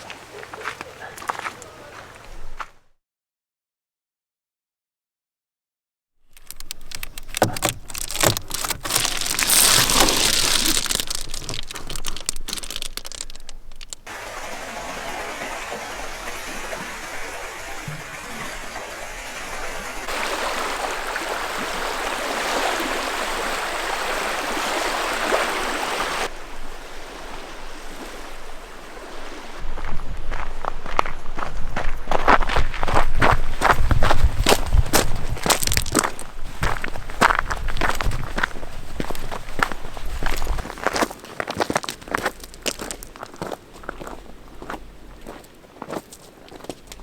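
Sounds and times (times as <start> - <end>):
rushing water: 0.0 - 2.4, 6.4 - 31.6, 32.8 - 47.0
crackly clicks: 6.3 - 14.1.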